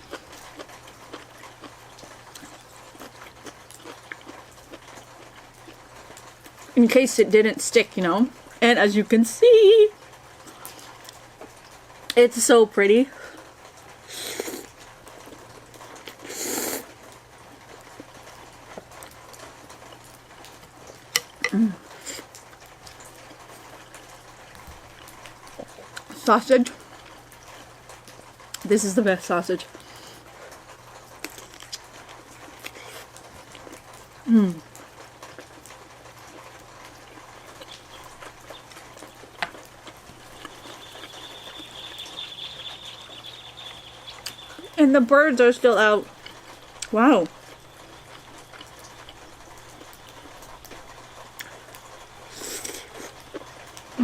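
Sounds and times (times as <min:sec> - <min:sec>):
close-up chewing: 0:00.0 - 0:06.8, 0:10.0 - 0:12.2, 0:13.2 - 0:28.7, 0:29.6 - 0:44.8, 0:45.8 - 0:54.0
birds chittering: 0:37.3 - 0:39.3, 0:40.2 - 0:49.0
mouth clicks: 0:40.3 - 0:44.8.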